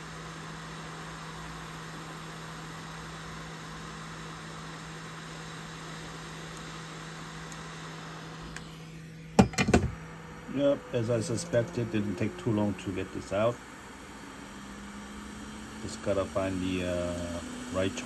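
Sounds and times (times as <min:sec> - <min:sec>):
electric fan humming: 0:00.8 - 0:18.0.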